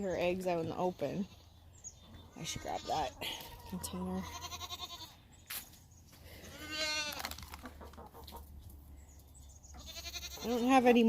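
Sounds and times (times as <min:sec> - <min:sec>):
goats bleating: 0:02.4 - 0:05.2, 0:06.5 - 0:07.3, 0:09.8 - 0:10.8.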